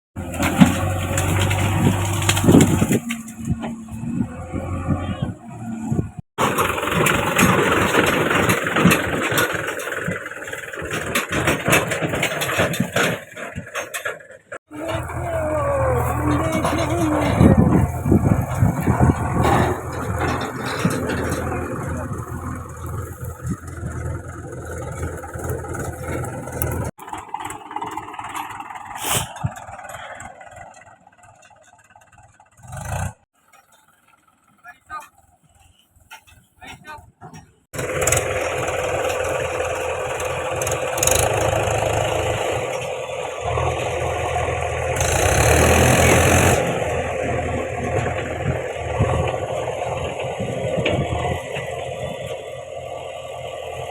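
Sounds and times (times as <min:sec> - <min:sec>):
diesel engine running: 0:00.2 - 0:36.1, 0:37.7 - 0:53.9
clattering and sharp knocks: 0:06.4 - 0:14.3.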